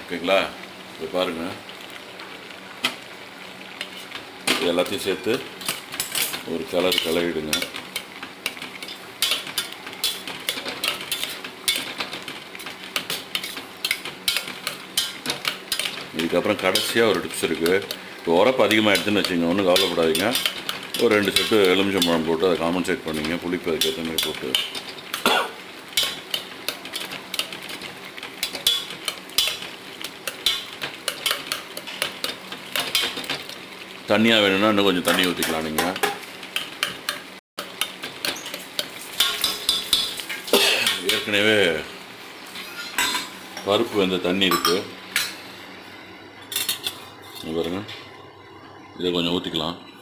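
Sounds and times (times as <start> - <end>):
spoon stirring in a pot: 4.9 - 22.4.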